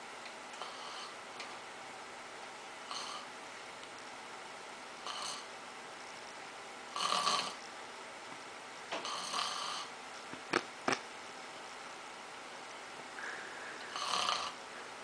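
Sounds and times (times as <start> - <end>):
person snoring: 0.6 - 1.2, 2.9 - 3.3, 5.1 - 5.4, 7.0 - 7.6, 9.0 - 9.9, 13.2 - 14.9.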